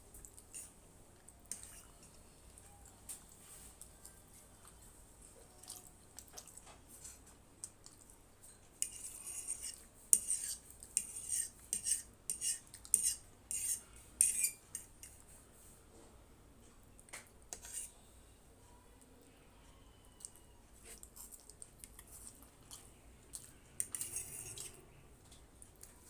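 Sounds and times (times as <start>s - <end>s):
cutlery scraping a dish: 8.4s - 15.2s, 17.5s - 17.9s, 23.8s - 24.8s.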